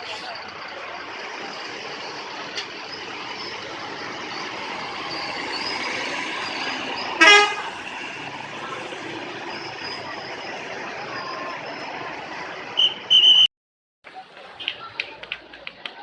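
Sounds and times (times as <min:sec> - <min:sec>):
steady traffic noise: 0:00.0 - 0:16.0
loud vehicle horn blast: 0:07.2 - 0:07.8.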